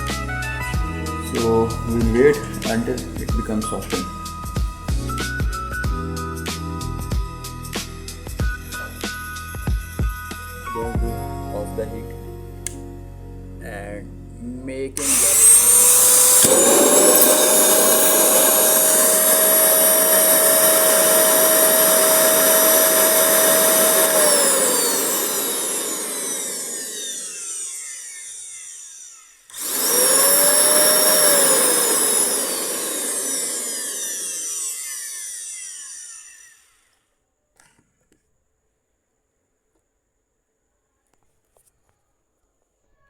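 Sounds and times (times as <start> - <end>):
vacuum motor whining: 15.0 - 37.0.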